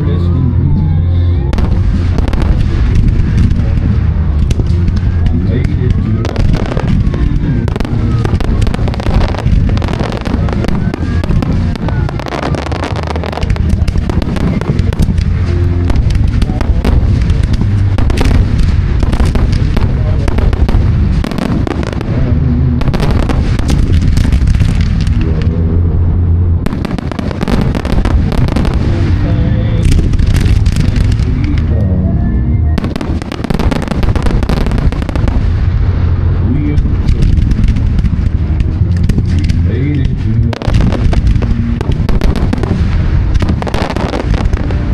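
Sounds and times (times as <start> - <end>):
loud music: 0.0 - 25.1
fireworks bangs and crackles: 1.4 - 31.8, 32.7 - 44.9.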